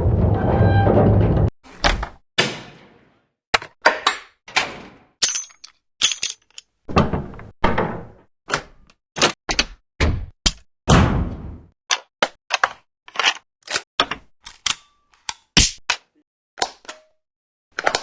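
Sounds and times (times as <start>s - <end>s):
thumps and slides: 0.0s - 1.5s
looping clunk and squeak: 0.0s - 1.6s.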